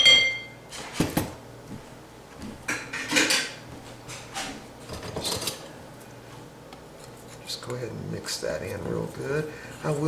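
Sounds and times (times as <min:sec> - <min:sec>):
kitchen utensils clinking in bowl: 0:00.0 - 0:00.6.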